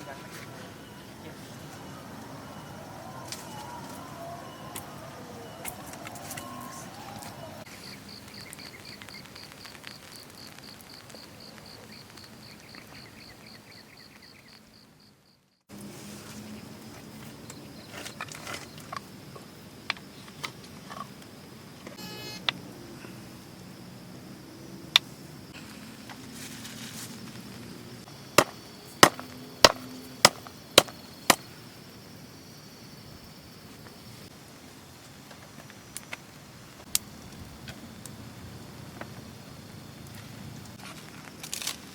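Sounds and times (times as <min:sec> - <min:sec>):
cricket chirping: 0:00.0 - 0:41.9
soft outdoor hiss: 0:00.0 - 0:41.9.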